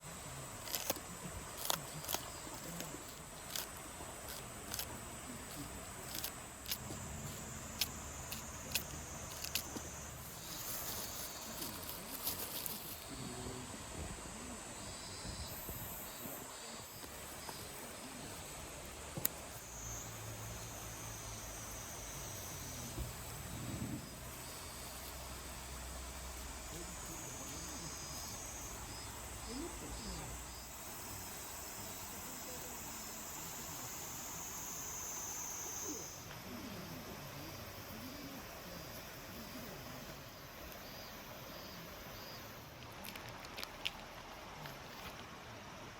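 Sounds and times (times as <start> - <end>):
steady hiss: 0.0 - 45.9
campfire crackling and popping: 42.8 - 44.3.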